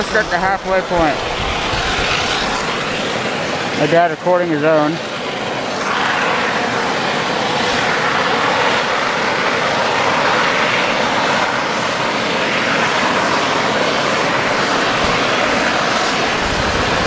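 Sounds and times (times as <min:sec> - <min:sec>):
wind rushing: 0:00.0 - 0:04.1, 0:12.9 - 0:17.0.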